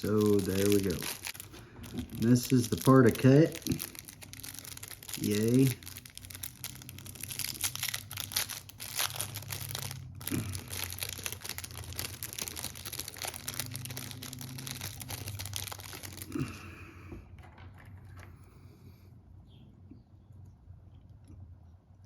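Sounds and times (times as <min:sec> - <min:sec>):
plastic packaging crinkling: 0:00.0 - 0:16.7.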